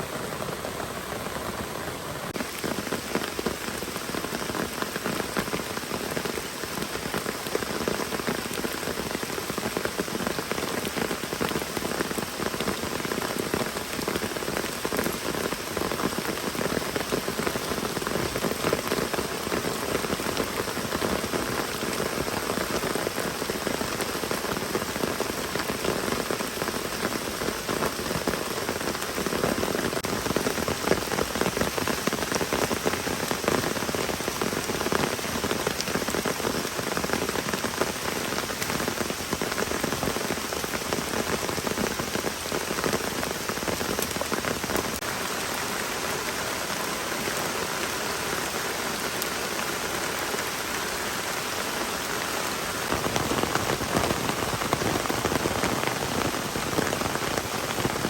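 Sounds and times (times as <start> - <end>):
heavy rain: 0.0 - 58.0
raindrops striking a surface: 0.0 - 58.0.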